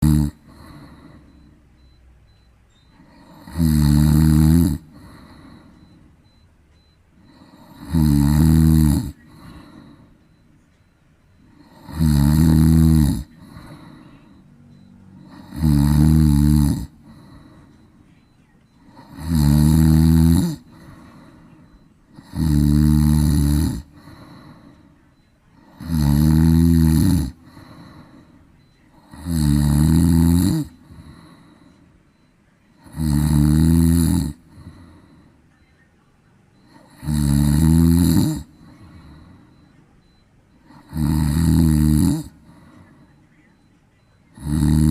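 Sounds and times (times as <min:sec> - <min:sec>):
cat snoring: 0:00.0 - 0:06.0, 0:06.8 - 0:10.4, 0:11.4 - 0:17.8, 0:18.7 - 0:35.3, 0:36.6 - 0:39.4, 0:40.0 - 0:42.8, 0:44.3 - 0:44.9
cat breathing quietly: 0:09.2 - 0:11.8, 0:13.4 - 0:15.5, 0:20.7 - 0:22.0, 0:23.9 - 0:25.8.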